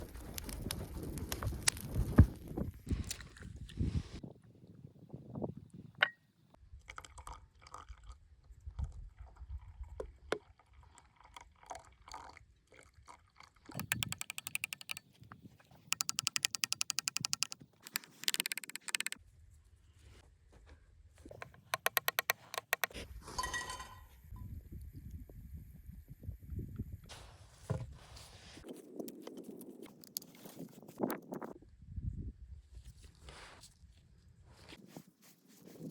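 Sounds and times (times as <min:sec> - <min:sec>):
knocks and handling sounds: 0:13.8 - 0:19.2, 0:21.3 - 0:24.0.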